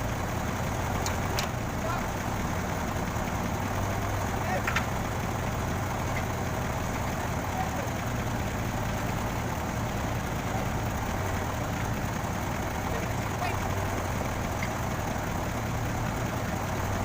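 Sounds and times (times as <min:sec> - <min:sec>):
truck engine idling: 0:00.0 - 0:17.0.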